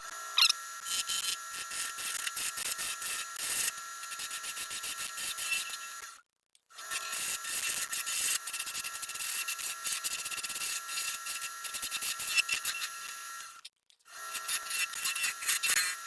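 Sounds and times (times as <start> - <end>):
turning tool scraping acrylic: 6.8 - 13.6, 14.2 - 16.0.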